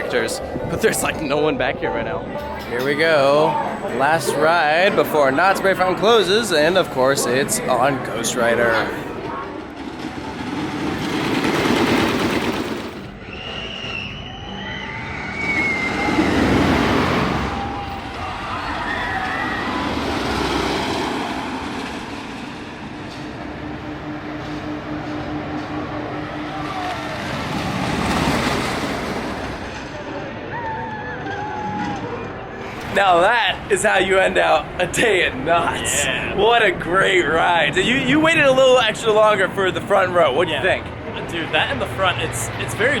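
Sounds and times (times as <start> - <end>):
roller coaster rumbling on track: 0.0 - 43.0
high-pitched squeals or cries: 13.2 - 16.5.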